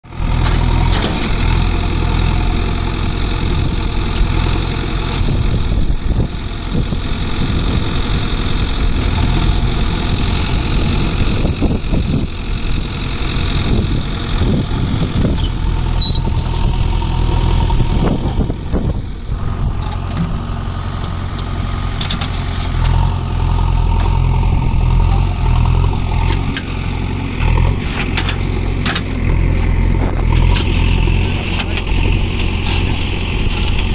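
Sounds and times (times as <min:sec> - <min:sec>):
diesel engine running: 0:00.0 - 0:33.9
knocks and clatter: 0:00.4 - 0:01.6, 0:27.7 - 0:33.9.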